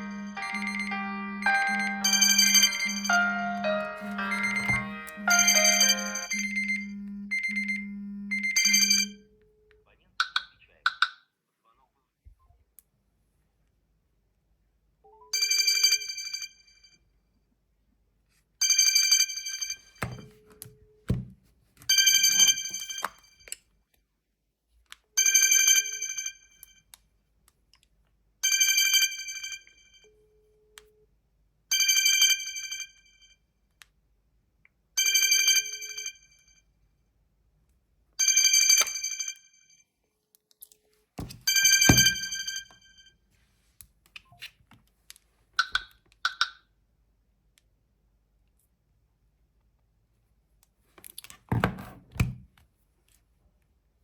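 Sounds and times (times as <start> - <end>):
telephone bell ringtone: 0.0 - 9.3, 15.2 - 17.0, 18.6 - 20.4, 21.9 - 23.4, 25.2 - 26.6, 28.4 - 30.2, 31.7 - 33.4, 35.0 - 36.6, 38.2 - 39.8, 41.5 - 43.2.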